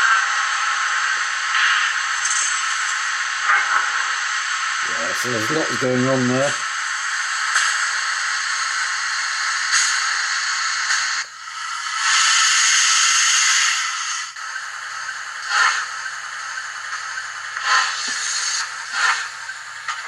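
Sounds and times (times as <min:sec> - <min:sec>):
steam hissing: 0:00.0 - 0:20.0
steam venting blast: 0:04.3 - 0:06.6, 0:09.0 - 0:20.0
steam puff: 0:09.8 - 0:20.0.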